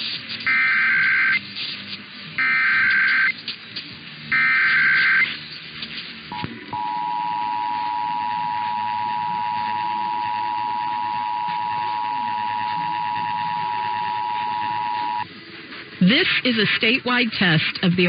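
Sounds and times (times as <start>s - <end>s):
two-tone attention signal: 4.4s - 5.3s, 6.3s - 15.2s.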